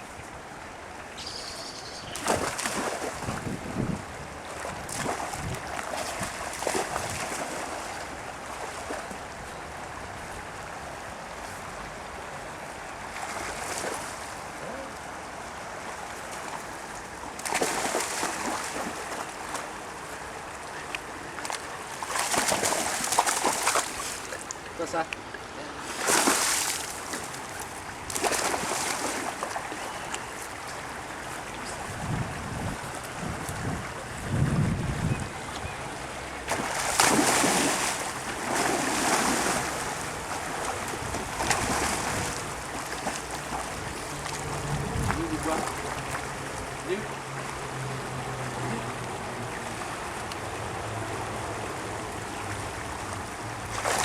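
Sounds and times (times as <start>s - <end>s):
river water rushing: 0.0s - 54.0s
water splashing: 2.1s - 3.7s, 4.5s - 9.3s, 17.3s - 50.8s, 52.6s - 54.0s
dog splashing in water: 22.1s - 24.2s, 28.1s - 29.6s, 36.5s - 44.4s.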